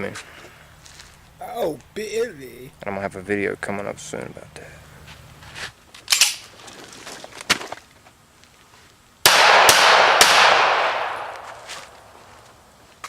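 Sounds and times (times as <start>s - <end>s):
pistol shots: 9.2s - 12.0s.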